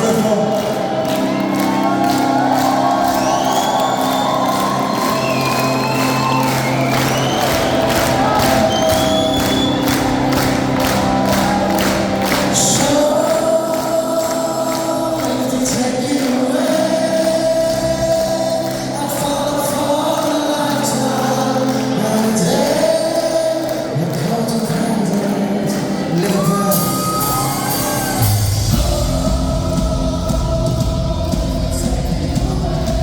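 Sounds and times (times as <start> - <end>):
lead vocal singing long notes: 0.0 - 33.0
live band playing: 0.0 - 33.0.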